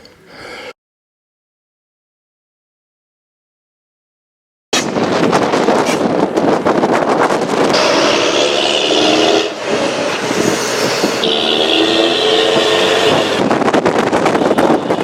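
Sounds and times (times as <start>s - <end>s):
bus engine and gear whine: 4.8s - 15.0s
road noise: 4.8s - 15.0s.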